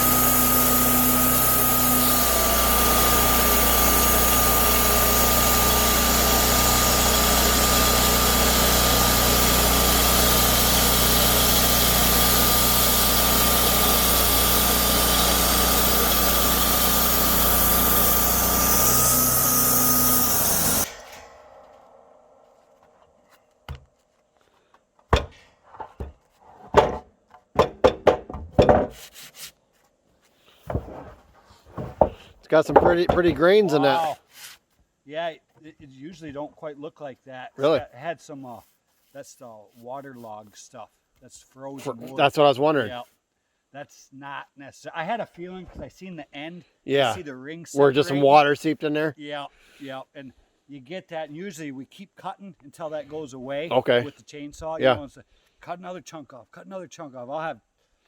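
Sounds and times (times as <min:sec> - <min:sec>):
saw blade whine: 0:00.0 - 0:23.8
sharp knocks: 0:25.1 - 0:29.0, 0:31.7 - 0:33.6.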